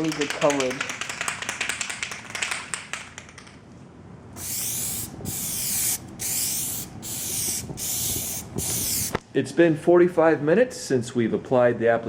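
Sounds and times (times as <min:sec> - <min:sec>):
aerosol spray can hissing: 0:04.4 - 0:09.2.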